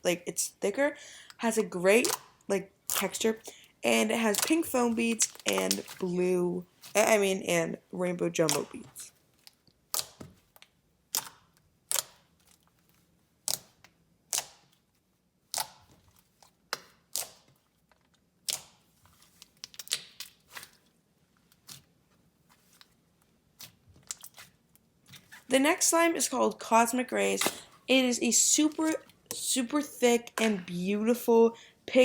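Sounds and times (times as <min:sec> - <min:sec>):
slime clicking and popping: 0:09.9 - 0:10.2, 0:11.1 - 0:12.3, 0:13.4 - 0:14.8.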